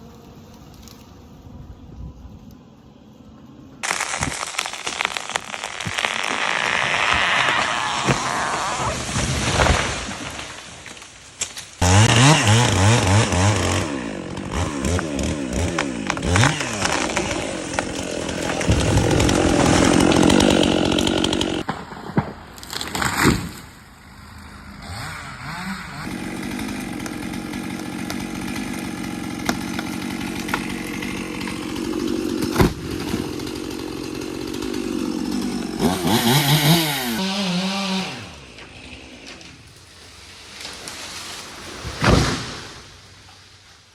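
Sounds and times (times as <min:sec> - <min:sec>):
chainsaw revving and cutting: 0:03.9 - 0:10.5, 0:11.8 - 0:21.7, 0:24.1 - 0:39.4.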